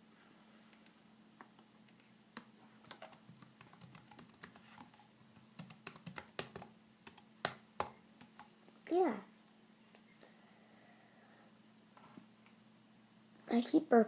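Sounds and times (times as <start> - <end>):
typing on computer keyboard: 2.9 - 5.0, 5.6 - 8.5.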